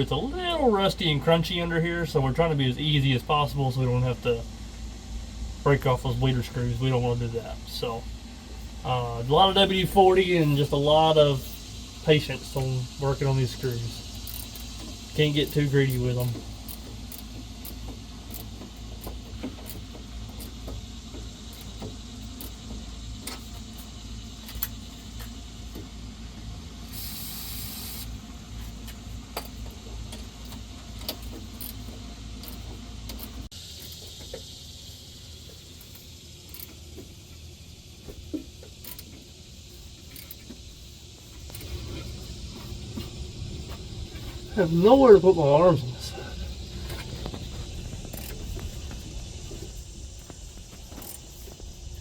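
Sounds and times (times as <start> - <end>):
steady low hum: 0.0 - 52.0
aerosol spray hiss: 26.8 - 28.2.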